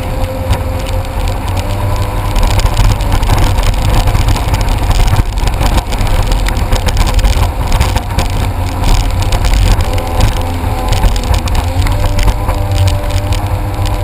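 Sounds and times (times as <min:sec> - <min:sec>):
jet ski engine running: 0:00.0 - 0:14.0
loud rushing noise: 0:00.0 - 0:14.0.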